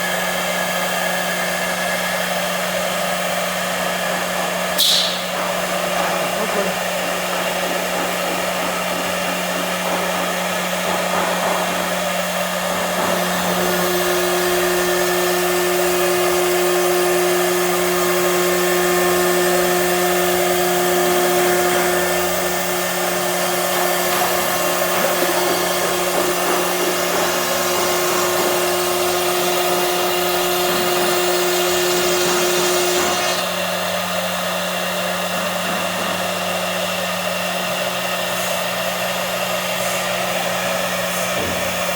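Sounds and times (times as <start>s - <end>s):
machine motor whir: 2.2s - 41.9s.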